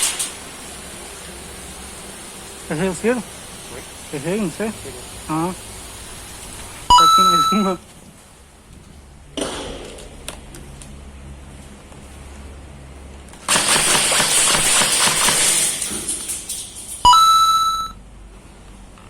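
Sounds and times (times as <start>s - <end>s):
brief ringing tone: 6.9s - 7.8s, 17.1s - 18.0s
airsoft gun rapid clicking: 13.5s - 15.7s.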